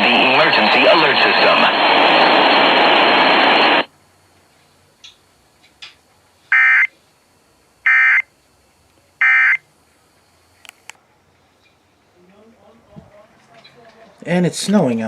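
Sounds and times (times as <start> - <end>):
loud radio hiss: 0.0 - 4.8, 5.6 - 11.0
buzzy digital data bursts: 7.8 - 8.3.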